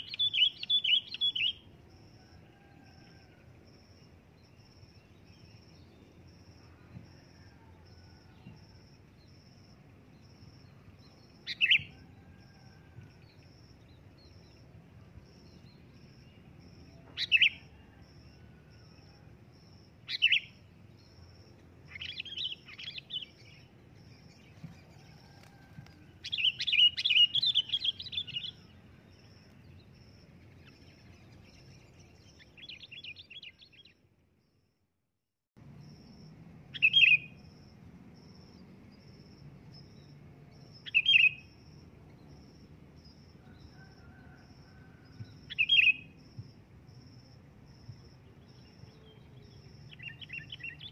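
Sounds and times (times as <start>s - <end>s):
bird calling: 0.0s - 1.6s.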